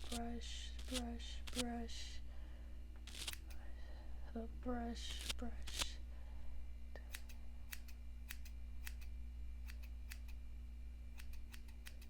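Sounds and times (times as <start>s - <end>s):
scissors snipping: 0.0s - 1.6s, 3.0s - 3.6s, 5.0s - 5.9s, 7.1s - 10.4s, 11.2s - 12.0s.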